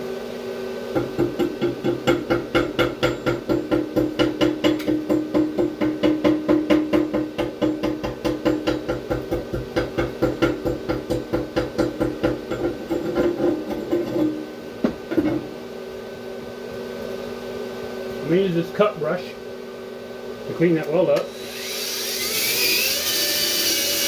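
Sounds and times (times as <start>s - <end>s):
welder humming: 20.6s - 24.0s
stick welding arc pulsing: 21.2s - 24.0s.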